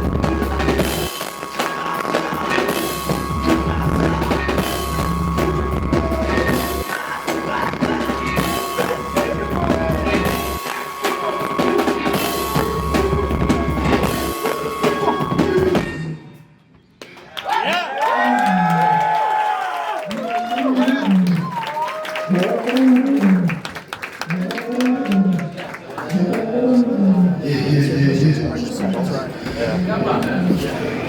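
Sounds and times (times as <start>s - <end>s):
live rock band playing: 0.0s - 16.1s.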